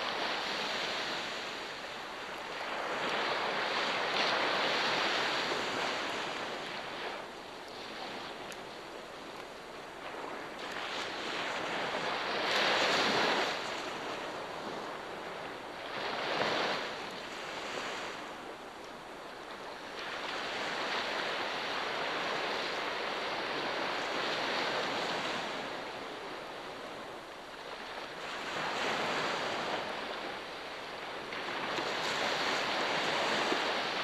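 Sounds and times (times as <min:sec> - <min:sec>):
sea waves washing onto shore: 0:00.0 - 0:34.0.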